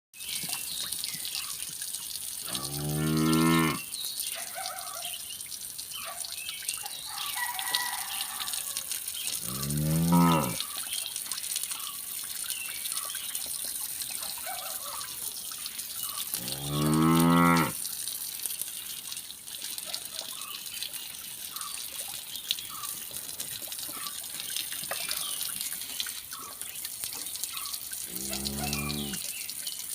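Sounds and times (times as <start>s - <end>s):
cow mooing: 2.5s - 3.8s, 9.4s - 10.6s, 16.4s - 17.8s, 28.1s - 29.2s.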